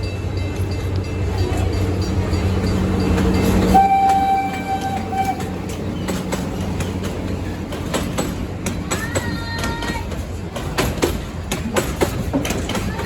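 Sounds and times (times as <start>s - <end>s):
train rumbling: 0.0s - 13.0s
train whistle blast: 3.7s - 5.5s.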